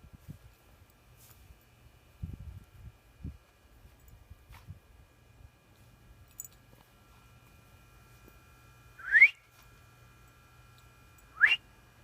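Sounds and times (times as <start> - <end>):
person whistling: 9.0 - 9.4, 11.4 - 11.6.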